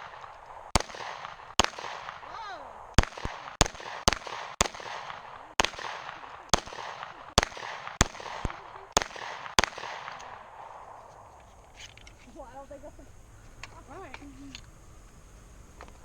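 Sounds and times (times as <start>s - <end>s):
pistol shots with echo: 0.0s - 11.4s.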